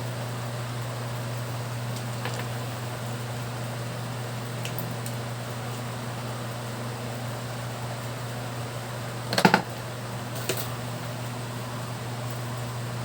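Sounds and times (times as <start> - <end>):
sharp clicks: 9.3 - 9.7.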